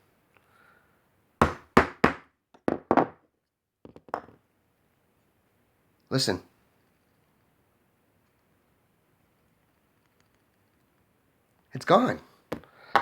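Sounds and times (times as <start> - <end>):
hammer tapping center punch: 12.5 - 13.0.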